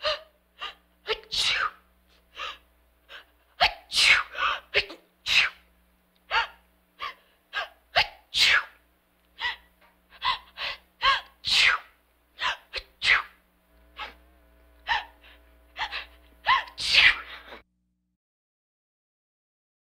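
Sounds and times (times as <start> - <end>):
woman sneezing: 0.0 - 1.8, 3.2 - 5.6, 6.3 - 8.8, 9.4 - 13.4, 14.9 - 17.6.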